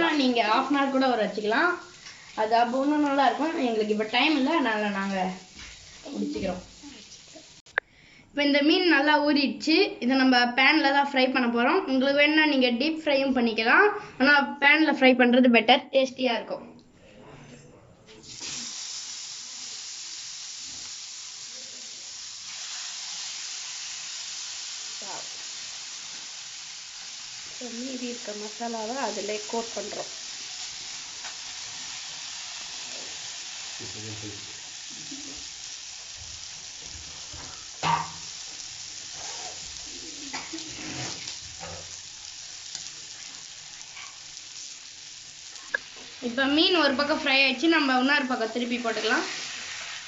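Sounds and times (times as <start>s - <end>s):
fish sizzling in frying pan: 0.0s - 7.7s, 18.2s - 50.0s.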